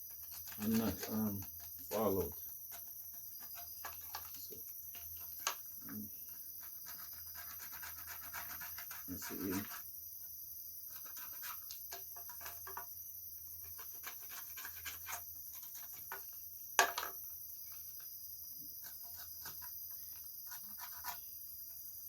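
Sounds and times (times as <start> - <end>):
hand sanding plastic: 0.0 - 4.6, 6.6 - 9.9.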